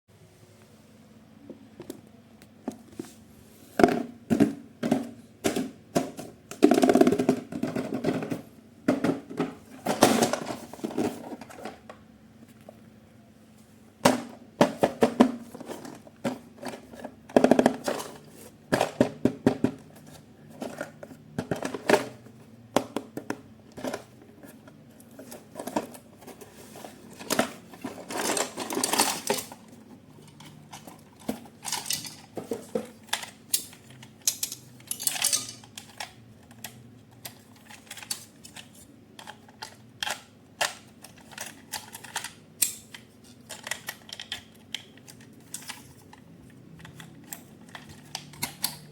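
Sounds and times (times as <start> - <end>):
small hard parts clattering: 22.8 - 48.9.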